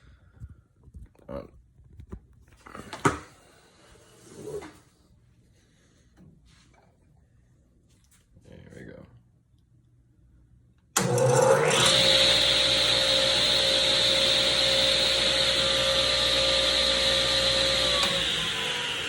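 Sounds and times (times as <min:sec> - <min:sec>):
table saw motor and blade whine: 0:11.0 - 0:19.0.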